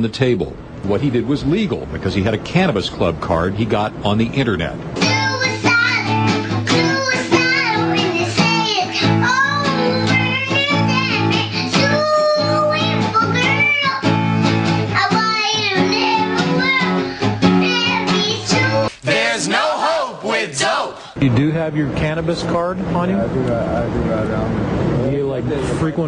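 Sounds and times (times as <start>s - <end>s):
guitar accompaniment: 4.8s - 19.4s
child singing: 5.0s - 14.3s, 14.9s - 20.6s.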